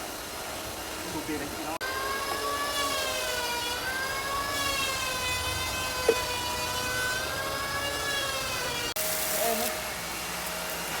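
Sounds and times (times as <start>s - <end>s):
power tool motor whining: 1.8s - 9.9s.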